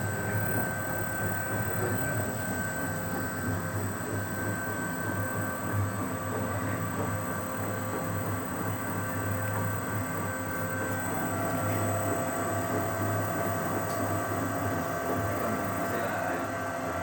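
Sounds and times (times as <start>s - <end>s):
washing machine humming and whining: 0.0s - 17.0s.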